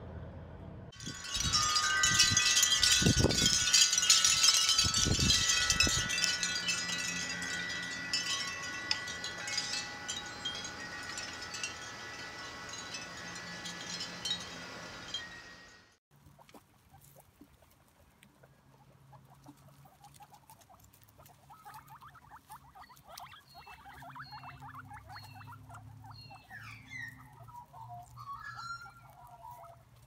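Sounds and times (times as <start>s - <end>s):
metal chimes ringing: 1.0s - 16.0s, 23.4s - 29.6s.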